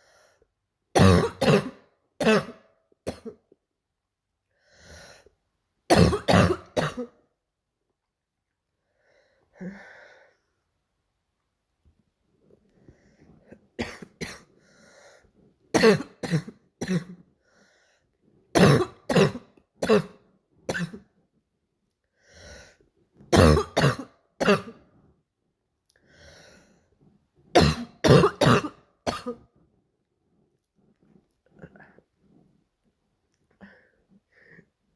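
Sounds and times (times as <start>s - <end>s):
girl's harsh barking cough: 1.0s - 3.4s, 5.9s - 7.2s, 15.7s - 17.2s, 18.6s - 21.0s, 23.3s - 24.8s, 27.6s - 29.4s.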